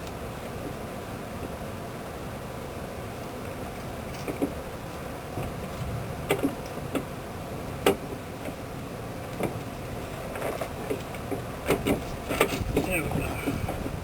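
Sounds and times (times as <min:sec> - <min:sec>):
steady low rumble: 0:00.0 - 0:14.0
sharp clicks and light knocks: 0:03.4 - 0:04.6, 0:05.4 - 0:07.1, 0:07.8 - 0:08.6, 0:09.3 - 0:09.7, 0:10.3 - 0:13.9.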